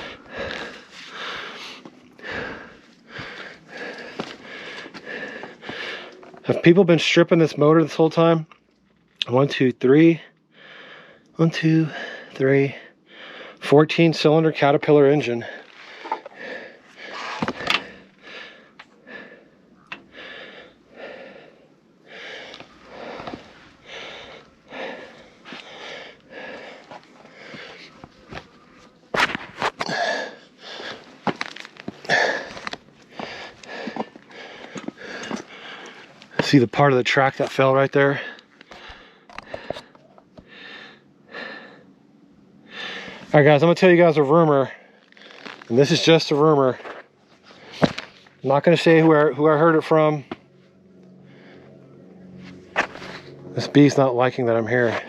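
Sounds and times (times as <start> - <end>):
person breathing hard: 0.0 - 6.5, 10.4 - 13.6, 15.3 - 36.4, 38.1 - 43.3, 46.8 - 48.4, 51.0 - 53.5.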